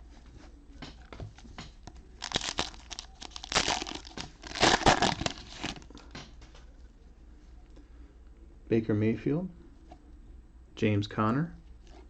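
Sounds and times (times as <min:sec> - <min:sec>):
cellophane wrapper crinkling and tearing: 0:02.2 - 0:06.0.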